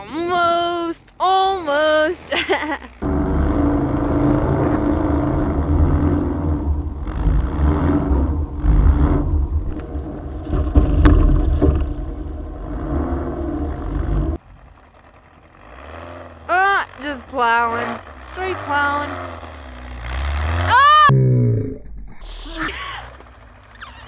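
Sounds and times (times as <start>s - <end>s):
car engine running under load: 2.3s - 21.1s, 22.8s - 24.0s
rushing noise: 3.0s - 14.4s.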